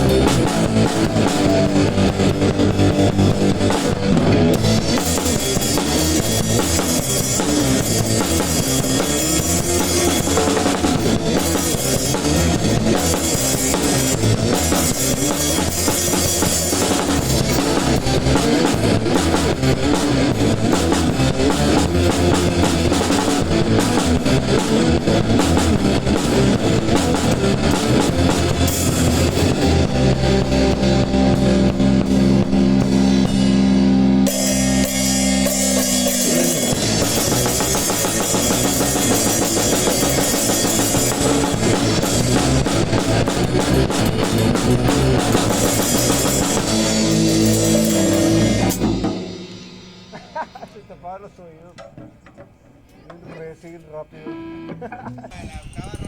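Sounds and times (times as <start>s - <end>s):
acoustic drum kit: 0.0s - 53.5s, 54.1s - 56.0s
ska band playing live: 0.0s - 56.0s.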